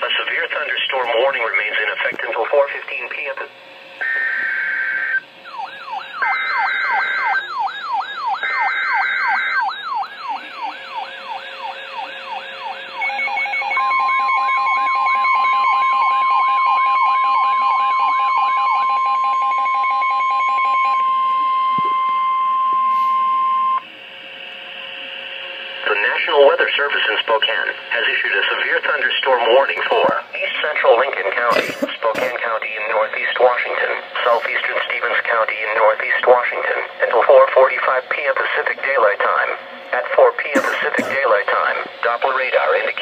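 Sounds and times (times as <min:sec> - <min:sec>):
steady alarm tone: 0:00.0 - 0:43.0
wavering siren-like alarm: 0:04.0 - 0:30.6.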